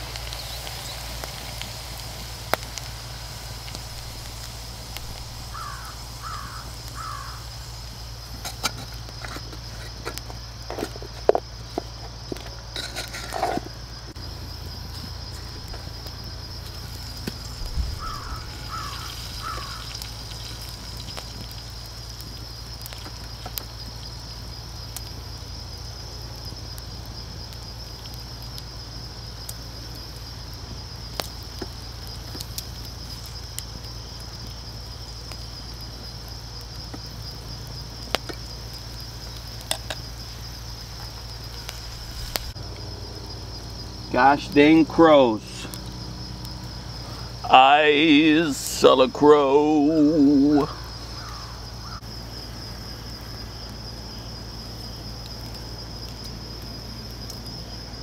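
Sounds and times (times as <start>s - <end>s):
insects chirring: 0.0s - 58.0s
crow cawing: 5.4s - 7.6s, 17.9s - 20.1s, 50.6s - 52.0s.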